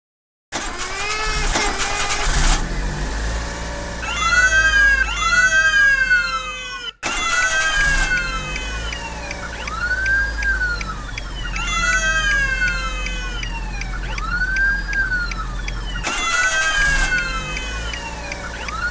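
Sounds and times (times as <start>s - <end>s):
siren-like wail: 4.0s - 18.9s.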